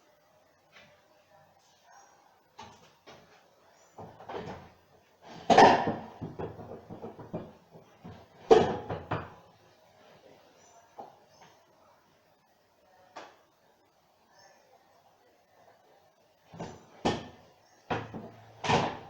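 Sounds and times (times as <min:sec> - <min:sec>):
tools knocking and clattering: 0:05.3 - 0:09.4.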